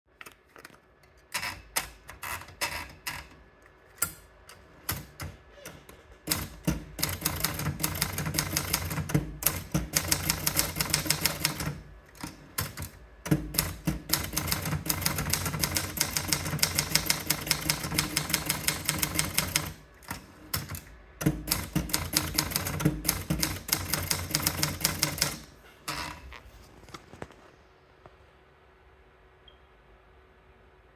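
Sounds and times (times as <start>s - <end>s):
typewriter typing: 4.8s - 25.5s.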